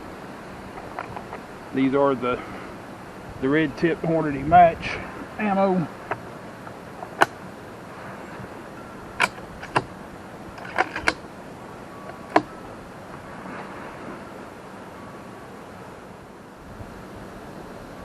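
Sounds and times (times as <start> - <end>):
rifle bolt metallic clicks: 9.2 - 9.9, 10.6 - 11.2, 12.1 - 12.5.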